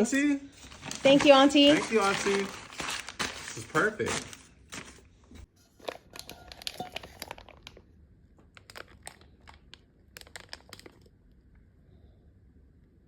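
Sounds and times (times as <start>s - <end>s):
packaging crinkling: 0.1s - 5.0s, 5.7s - 11.2s.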